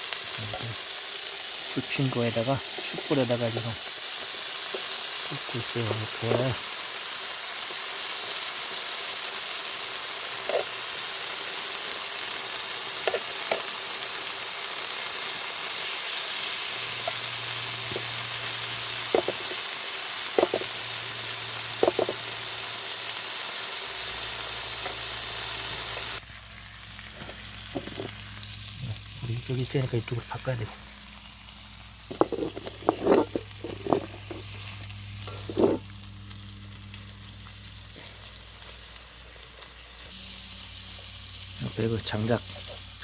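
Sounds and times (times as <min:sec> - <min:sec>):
meat sizzling on a grill: 0:00.0 - 0:43.0.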